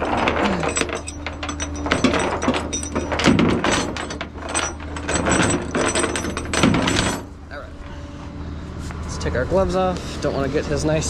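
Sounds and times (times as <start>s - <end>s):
low steady hum: 0.0s - 8.8s.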